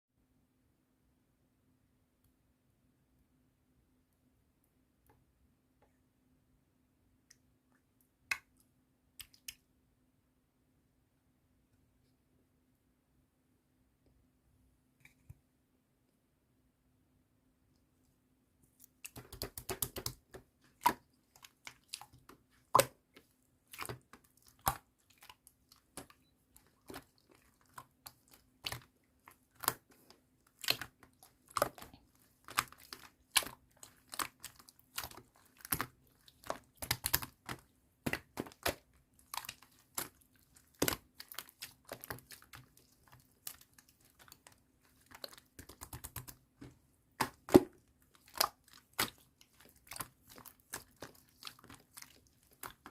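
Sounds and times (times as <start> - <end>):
slime squished by hand: 18.7 - 52.9.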